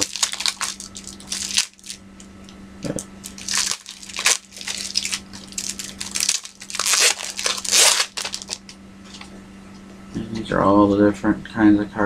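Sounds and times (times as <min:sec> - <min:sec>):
plastic packaging crinkling: 0:00.0 - 0:02.3, 0:03.0 - 0:09.3.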